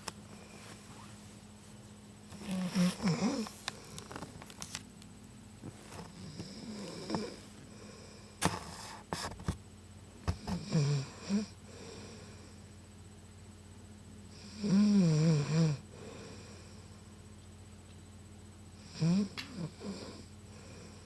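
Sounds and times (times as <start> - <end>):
person snoring: 2.3 - 4.1, 10.4 - 12.2, 18.9 - 21.0.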